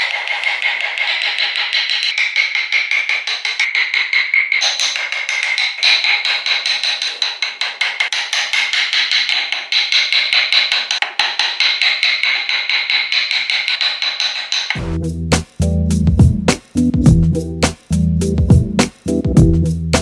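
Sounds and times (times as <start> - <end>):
rapid metallic hammer taps: 0.0 - 14.8.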